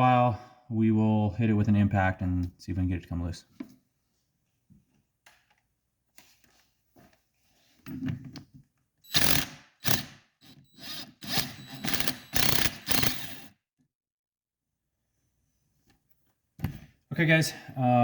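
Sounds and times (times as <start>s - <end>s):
impact wrench hammering: 9.1s - 13.5s.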